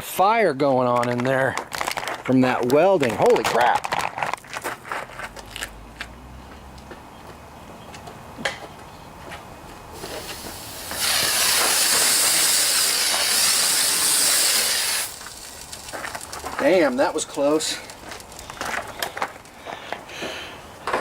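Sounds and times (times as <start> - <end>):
fire extinguisher hissing: 10.0 - 15.9
faint clicks and crackles: 15.1 - 20.0.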